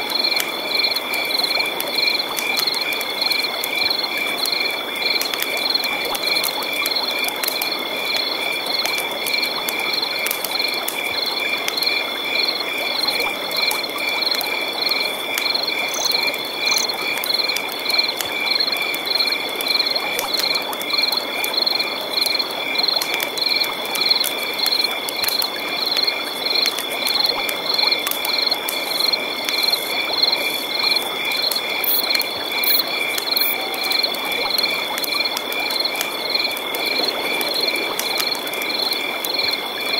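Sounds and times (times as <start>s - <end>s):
frogs calling: 0.1s - 39.9s
high insect trill: 11.1s - 21.0s, 23.4s - 37.0s.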